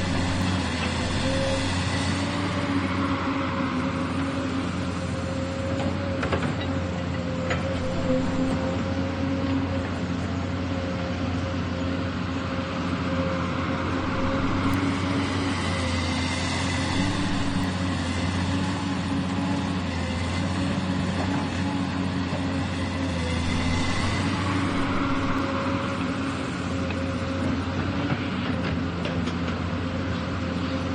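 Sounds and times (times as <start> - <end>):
excavator engine humming: 0.0 - 30.9.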